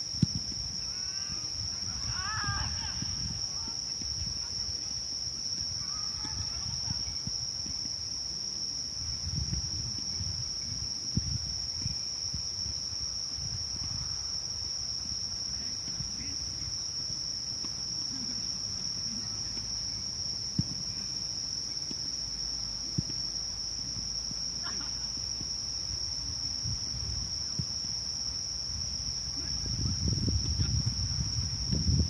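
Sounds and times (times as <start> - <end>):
crickets chirping: 0.0 - 32.0
low rumble on microphone: 5.8 - 17.0, 25.2 - 32.0.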